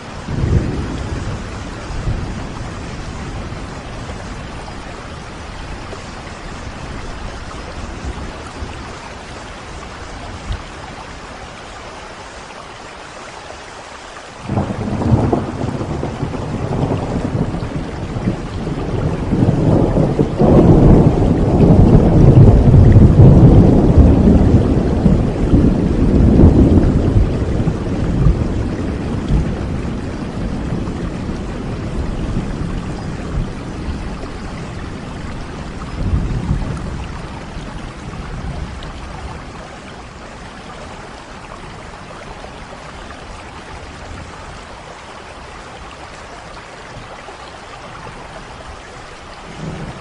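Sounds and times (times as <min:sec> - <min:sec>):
rolling thunder: 0:00.0 - 0:05.9, 0:14.5 - 0:40.2, 0:49.5 - 0:50.0
heavy rain: 0:00.0 - 0:50.0.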